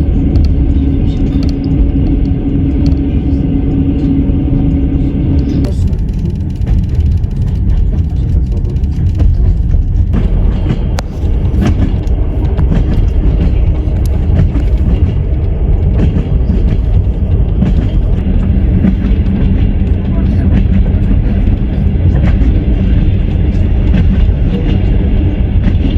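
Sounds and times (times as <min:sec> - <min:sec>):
train rumbling on rails: 0:00.0 - 0:25.9
wheels clacking: 0:05.4 - 0:25.9.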